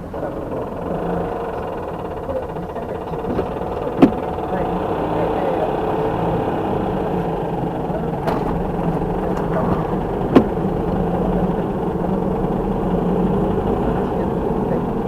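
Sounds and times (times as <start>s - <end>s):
car engine and road drone: 0.0s - 15.0s
sharp knocks: 3.1s - 4.8s, 8.1s - 11.2s.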